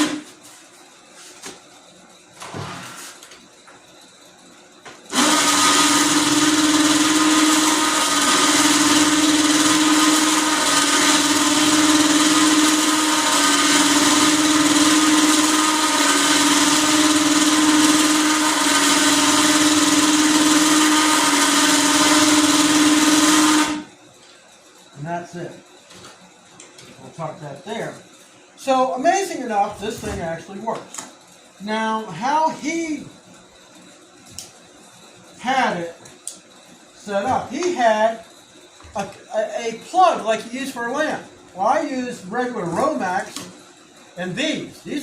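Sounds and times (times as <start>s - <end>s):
electric winch whining: 5.1s - 23.9s.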